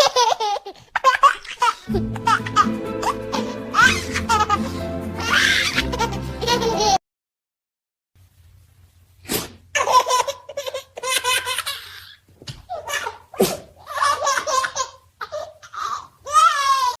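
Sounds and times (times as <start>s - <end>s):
baby laughing: 0.0s - 7.0s, 9.8s - 17.0s
puppy sneezing: 9.2s - 9.7s, 13.3s - 13.8s.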